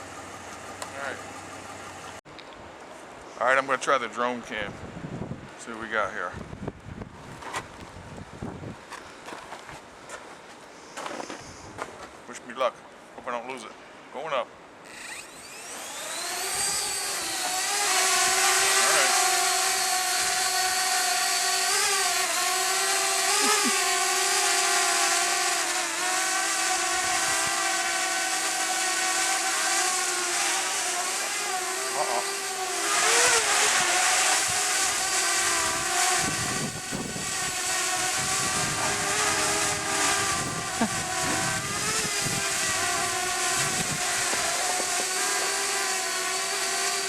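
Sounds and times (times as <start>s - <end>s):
drone rotors whining: 0.0s - 2.2s, 14.8s - 47.0s
wind buffeting microphone: 4.6s - 5.6s, 6.2s - 8.9s, 34.5s - 45.0s.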